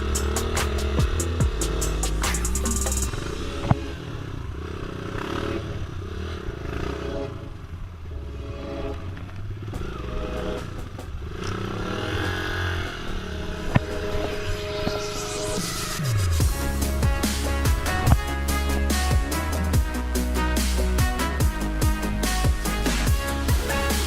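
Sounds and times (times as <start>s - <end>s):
motorcycle engine idling: 0.0s - 13.8s, 16.4s - 24.0s.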